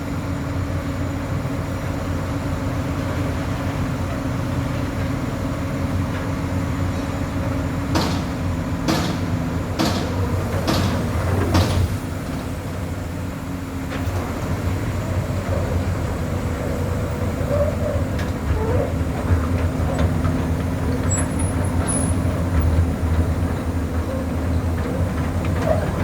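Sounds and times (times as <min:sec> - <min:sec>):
excavator diesel engine running: 0:00.0 - 0:26.0
sharp knocks: 0:08.0 - 0:11.8.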